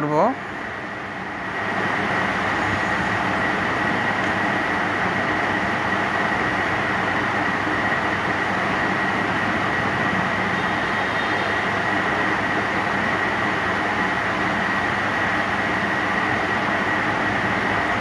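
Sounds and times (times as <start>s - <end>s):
rushing machine noise: 0.0s - 18.0s
thin high whine: 1.6s - 14.9s.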